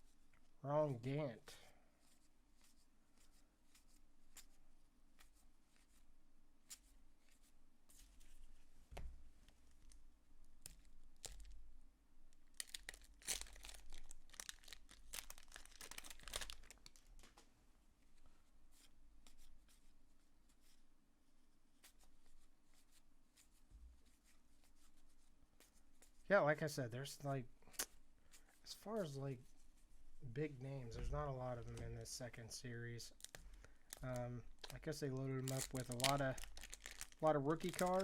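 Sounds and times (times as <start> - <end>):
wrapper being torn and crinkled: 10.7 - 11.6, 12.4 - 17.3, 33.1 - 34.8, 35.4 - 38.0
cards being handled: 33.1 - 38.0.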